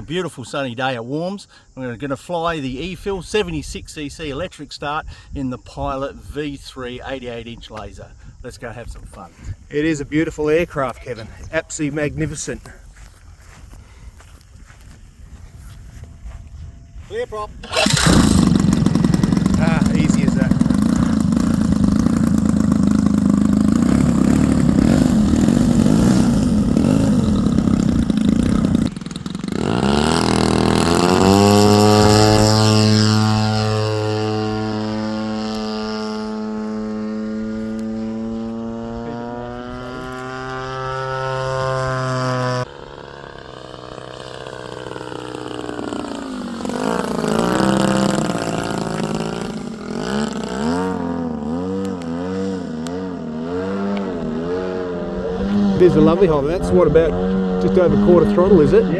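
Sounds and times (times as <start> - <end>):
model aircraft engine running: 17.3 - 58.9.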